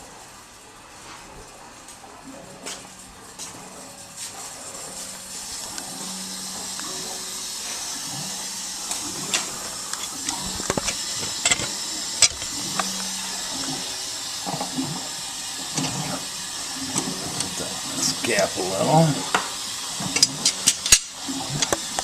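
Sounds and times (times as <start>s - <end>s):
water hissing from drain valve: 4.5s - 22.0s
sharp clicks and knocks: 8.9s - 13.8s.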